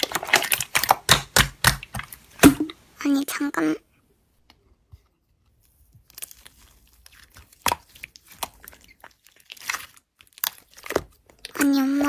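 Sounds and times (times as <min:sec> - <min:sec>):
slime clicking and crackling: 0:00.0 - 0:02.6, 0:06.0 - 0:12.0.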